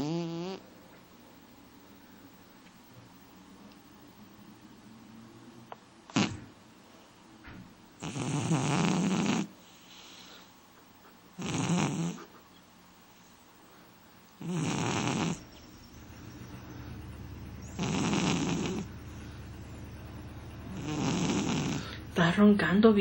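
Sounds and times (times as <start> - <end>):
man snoring: 0.0 - 0.6, 8.0 - 9.5, 11.4 - 12.2, 14.4 - 15.5, 17.7 - 18.9, 20.7 - 22.0.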